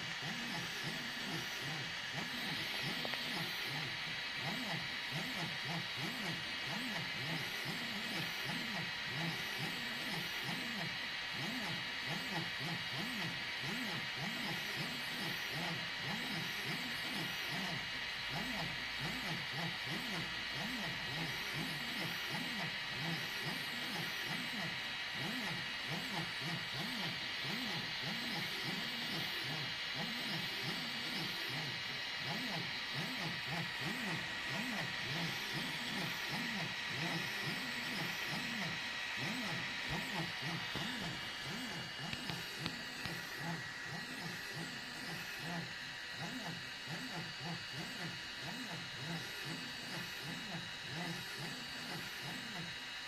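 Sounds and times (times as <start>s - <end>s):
printer fan hissing: 0.0s - 52.9s
stepper motors whining: 18.4s - 51.3s.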